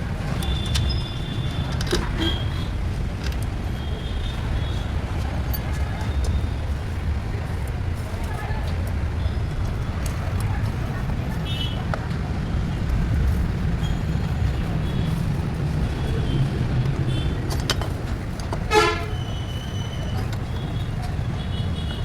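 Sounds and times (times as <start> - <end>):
low vehicle rumble: 0.0 - 22.0
horn toot: 18.7 - 20.0.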